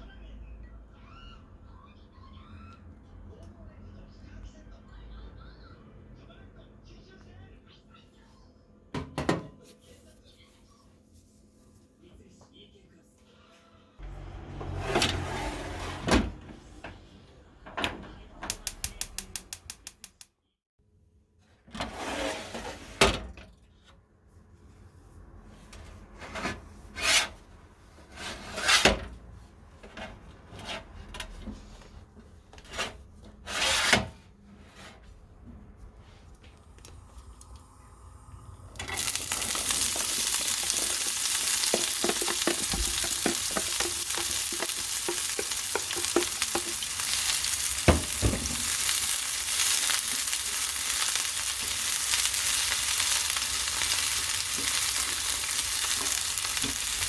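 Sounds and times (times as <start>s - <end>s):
cookware and utensils knocking: 9.0s - 9.6s, 40.7s - 47.0s
utensil stirring clicks: 18.5s - 20.3s, 38.9s - 47.9s
food sizzling in a frying pan: 37.5s - 57.0s.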